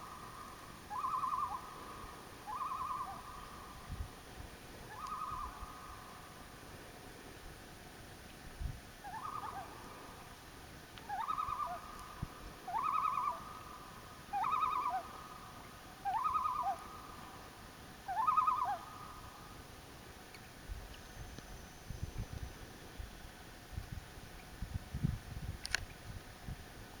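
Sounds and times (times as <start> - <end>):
loon calling: 0.1 - 1.9, 2.5 - 3.6, 4.9 - 5.8, 9.0 - 9.8, 11.1 - 12.1, 12.7 - 13.7, 14.3 - 15.3, 16.0 - 17.0, 18.1 - 19.0.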